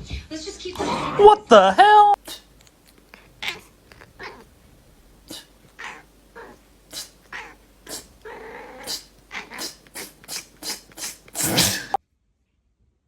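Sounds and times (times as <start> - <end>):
cat growling: 2.2 - 12.0
cat hissing: 2.2 - 12.0.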